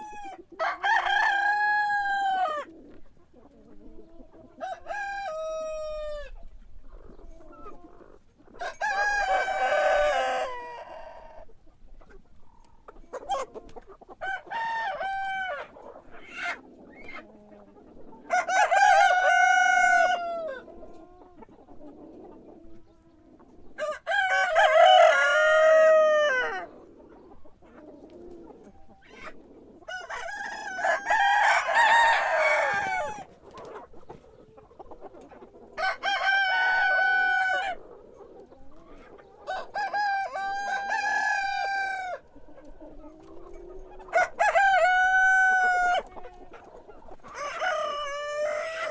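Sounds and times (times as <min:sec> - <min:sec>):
rooster crowing: 0:00.6 - 0:02.6, 0:18.3 - 0:20.6, 0:23.8 - 0:26.6, 0:29.9 - 0:33.3, 0:44.1 - 0:46.0
rooster clucking: 0:12.0 - 0:48.9.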